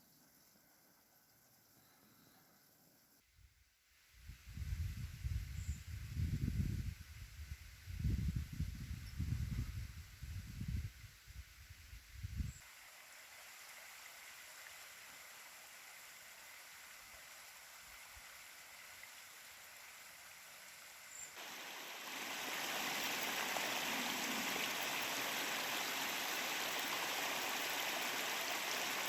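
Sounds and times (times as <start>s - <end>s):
steady rushing hiss: 12.5s - 29.0s.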